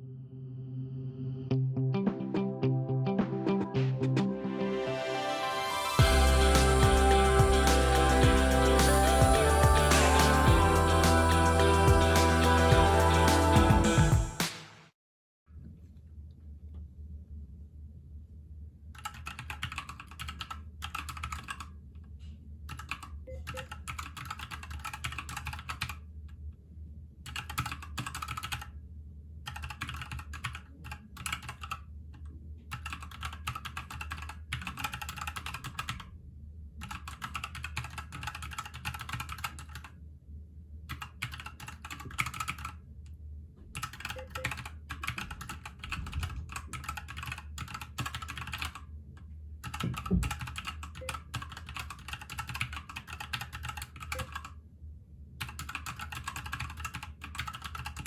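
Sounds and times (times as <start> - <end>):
typing on mechanical keyboard: 19.0 - 21.7, 22.7 - 26.0, 27.3 - 28.8, 29.5 - 31.9, 32.7 - 36.1, 36.8 - 40.0, 40.9 - 42.8, 43.8 - 48.9, 49.6 - 54.6, 55.4 - 58.0.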